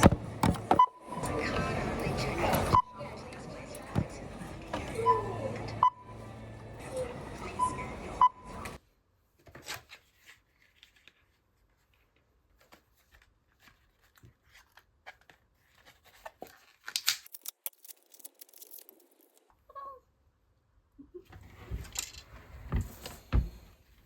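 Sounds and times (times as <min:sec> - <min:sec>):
packaging rustling: 0:12.6 - 0:19.4
small objects clicking: 0:16.9 - 0:19.4.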